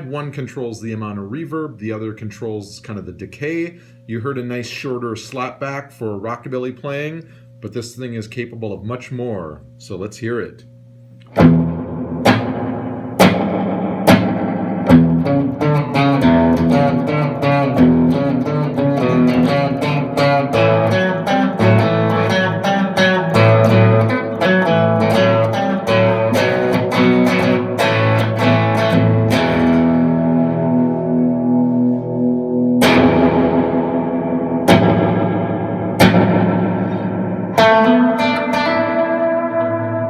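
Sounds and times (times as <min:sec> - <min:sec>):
electric guitar with reverb: 0:11.3 - 0:40.0.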